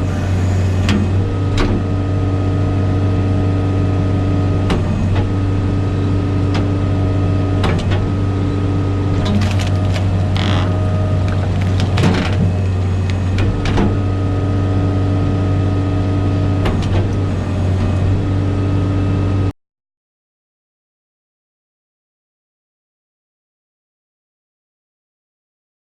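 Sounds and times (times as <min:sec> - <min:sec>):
engine running steadily: 0:00.0 - 0:19.5
wood processor knocks and clunks: 0:09.2 - 0:14.0.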